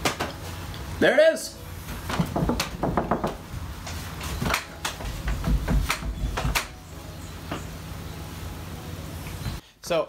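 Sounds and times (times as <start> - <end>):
wood creaking: 2.0 - 6.8
sharp wooden knocks: 2.1 - 3.4, 4.5 - 6.8.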